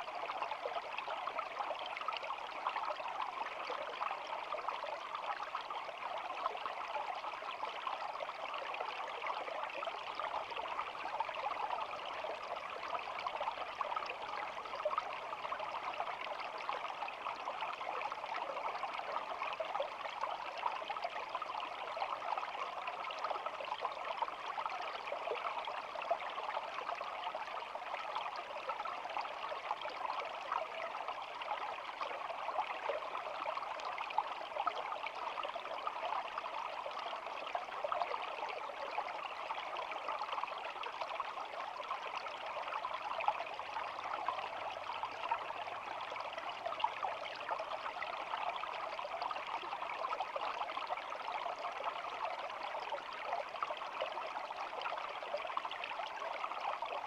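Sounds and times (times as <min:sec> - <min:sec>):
shallow stream babbling: 0:10.3 - 0:57.0.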